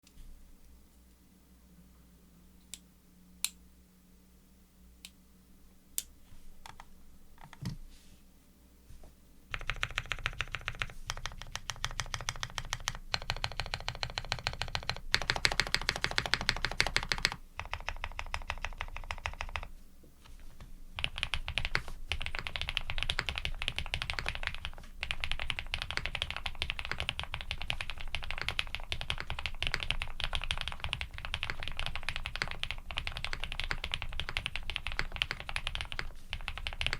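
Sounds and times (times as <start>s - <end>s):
mechanical keyboard typing: 9.5s - 19.7s, 21.0s - 36.9s.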